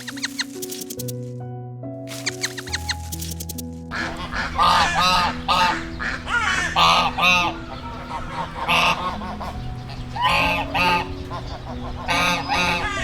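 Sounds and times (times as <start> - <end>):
geese honking: 3.9 - 13.0.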